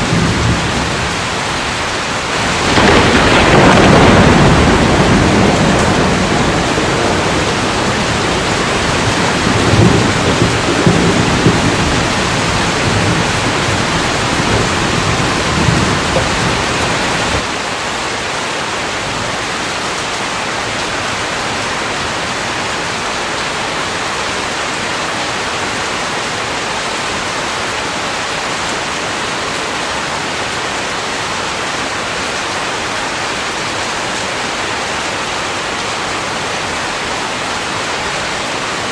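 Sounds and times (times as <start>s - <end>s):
thunder rumbling: 0.0s - 17.5s
heavy rain: 0.0s - 38.9s.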